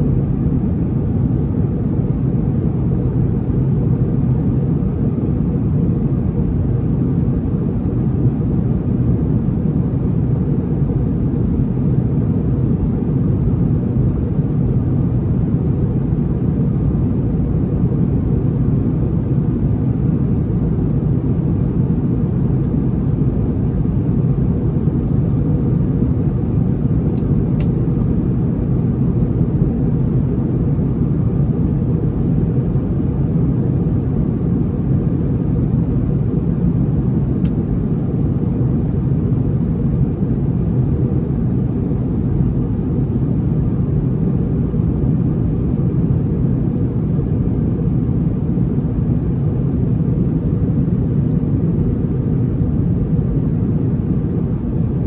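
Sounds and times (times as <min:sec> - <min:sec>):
airliner cabin engine roar: 0:00.0 - 0:55.0.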